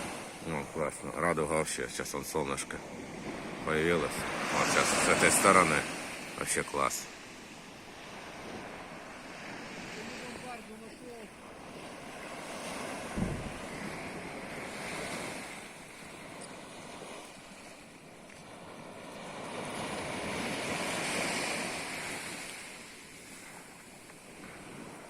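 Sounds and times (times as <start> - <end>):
sea surf washing on shore: 0.0 - 25.0
wind on microphone: 11.4 - 17.4.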